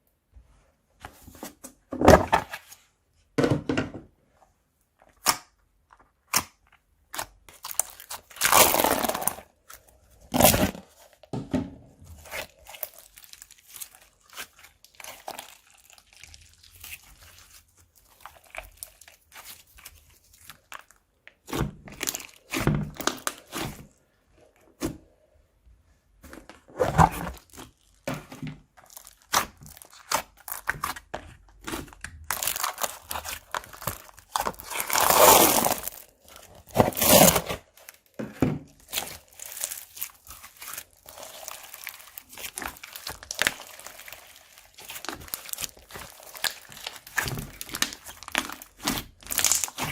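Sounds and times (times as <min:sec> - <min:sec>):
crunchy slime crackling: 0:06.2 - 0:11.2, 0:12.1 - 0:24.5, 0:27.0 - 0:28.1, 0:28.7 - 0:49.9.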